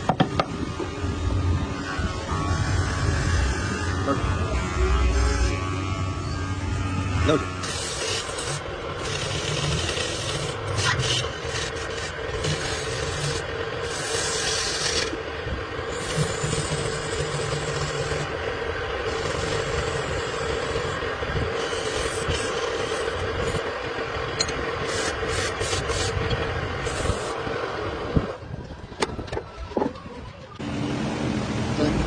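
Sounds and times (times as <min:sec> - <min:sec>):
power tool grinding wood: 0:00.8 - 0:15.2, 0:15.9 - 0:18.4, 0:19.0 - 0:23.8.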